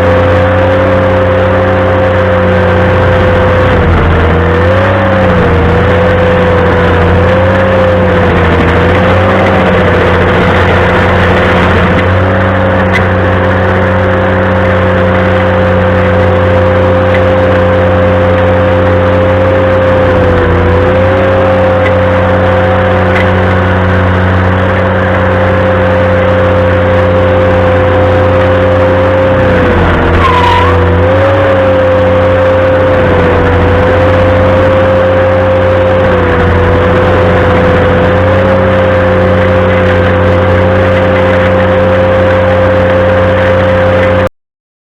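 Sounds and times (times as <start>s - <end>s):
stump grinder whine: 0.0s - 44.3s
tractor engine hum: 0.0s - 44.3s.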